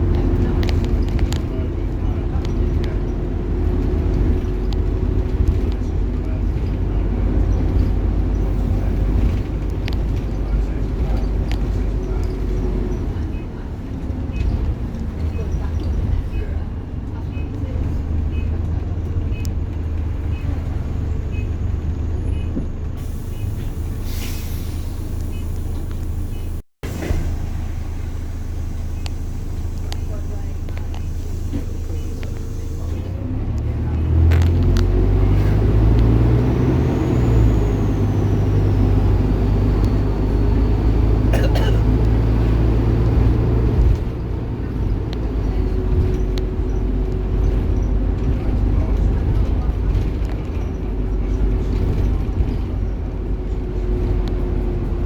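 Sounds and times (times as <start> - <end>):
diesel bus engine running: 0.0 - 55.0
air brakes hiss: 23.0 - 29.9.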